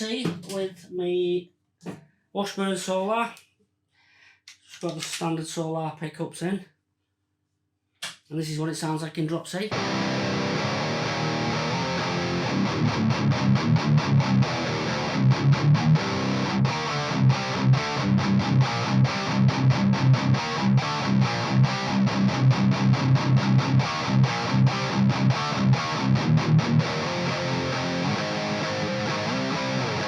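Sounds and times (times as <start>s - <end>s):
distorted electric guitar riff: 9.7s - 30.0s.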